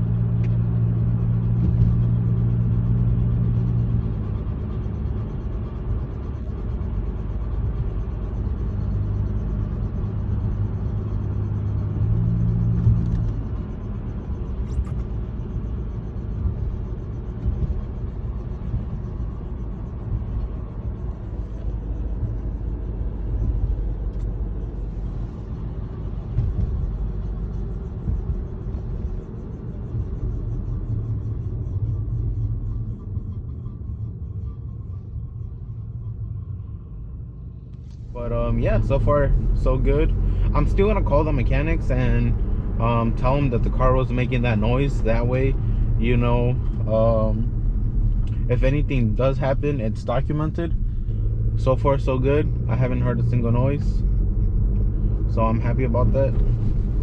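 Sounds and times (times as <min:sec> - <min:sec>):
car engine and road rumble: 0:00.0 - 0:57.0
low hum: 0:00.0 - 0:57.0.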